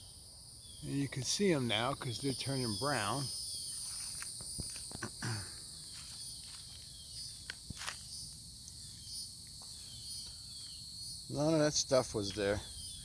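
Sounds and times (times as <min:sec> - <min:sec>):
high-pitched insect chorus: 0:00.0 - 0:13.0
footsteps: 0:03.7 - 0:05.2, 0:05.8 - 0:08.1.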